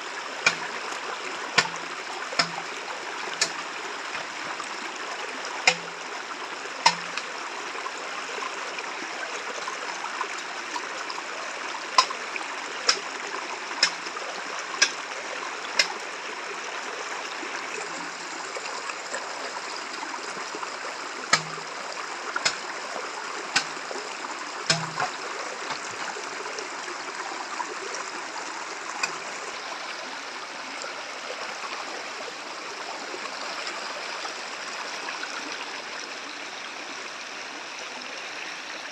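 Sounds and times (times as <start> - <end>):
stream rushing: 0.0 - 38.9
sharp knocks: 21.3 - 21.6, 24.7 - 25.2.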